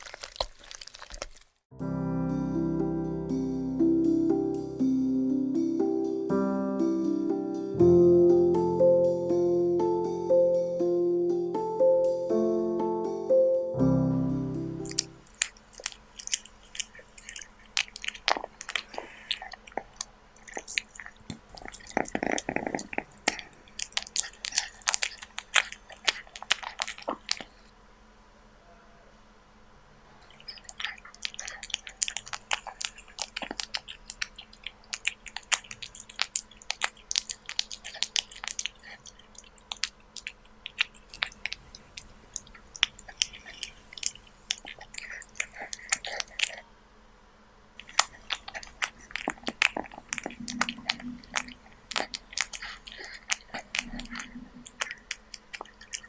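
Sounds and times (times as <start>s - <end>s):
kitten chewing meat: 0.0s - 1.6s, 14.1s - 27.7s, 30.2s - 46.7s, 47.8s - 56.0s.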